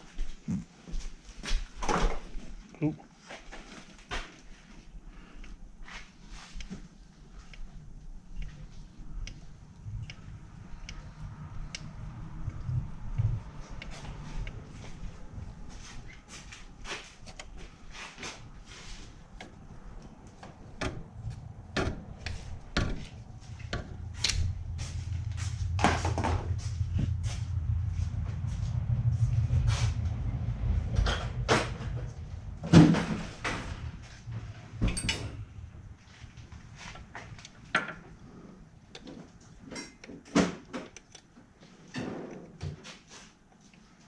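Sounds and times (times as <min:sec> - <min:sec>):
low steady hum: 0:00.0 - 0:41.4
metal tools clinking and knocking: 0:34.8 - 0:35.4.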